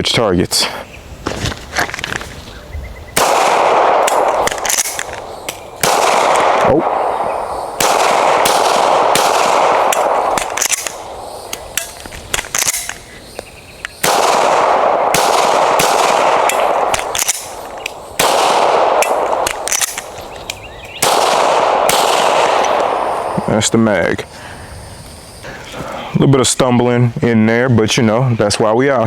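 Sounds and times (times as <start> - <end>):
handgun shots: 3.2 - 13.0, 14.0 - 23.3.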